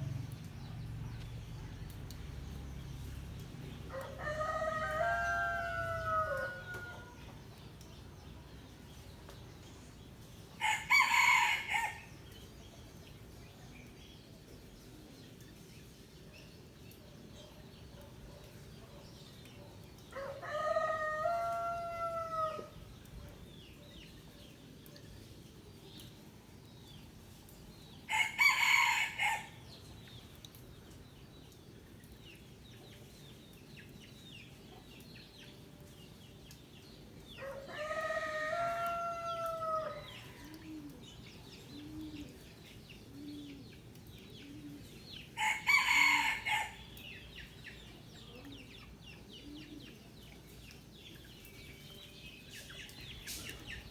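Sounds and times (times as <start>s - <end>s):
roosters crowing: 3.9s - 7.2s, 10.6s - 12.1s, 20.1s - 22.7s, 28.1s - 29.6s, 37.4s - 40.8s, 45.4s - 46.9s.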